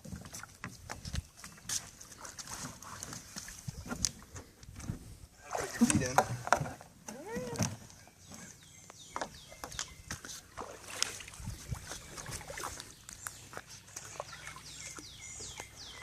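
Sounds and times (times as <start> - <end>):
small water splashes: 5.4 - 6.8, 9.2 - 16.0
bird chirping: 7.3 - 10.3, 11.4 - 16.0.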